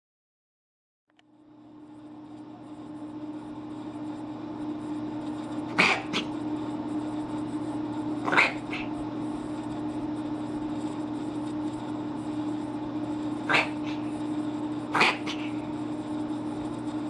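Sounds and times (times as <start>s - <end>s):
cat making sharp noisy breaths: 5.7s - 6.4s, 8.2s - 9.0s, 13.4s - 14.3s, 14.9s - 15.8s.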